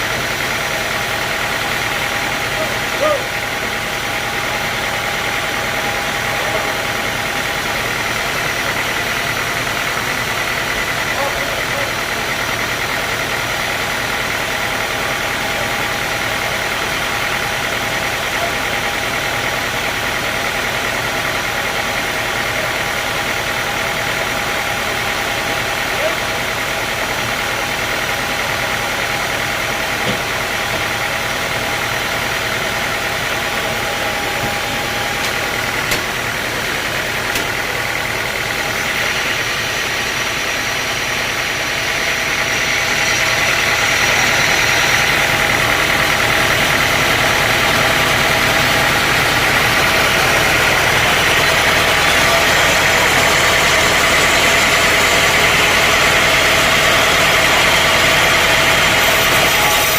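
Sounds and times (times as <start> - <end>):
sawmill machinery drone: 0.0 - 59.9
high constant whine: 32.4 - 59.9.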